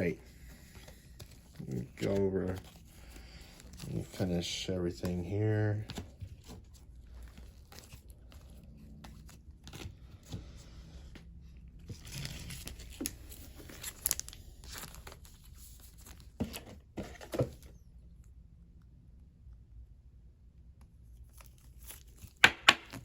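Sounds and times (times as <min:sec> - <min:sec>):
plastic and paper crinkling: 0:00.0 - 0:10.7, 0:11.8 - 0:17.7, 0:21.2 - 0:22.4.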